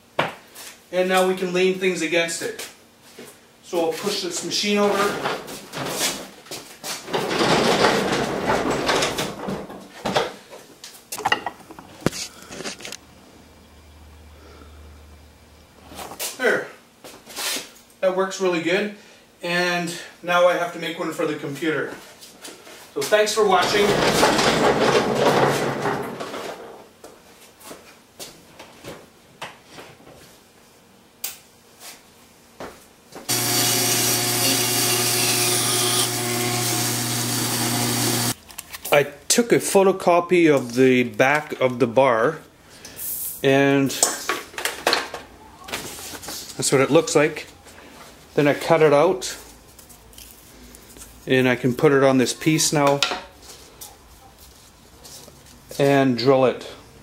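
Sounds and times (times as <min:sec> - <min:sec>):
knocks and clunks: 0:07.1 - 0:10.3, 0:23.6 - 0:26.6
machine scraping across floor: 0:23.6 - 0:26.8
woodworking power tool running: 0:33.3 - 0:38.4.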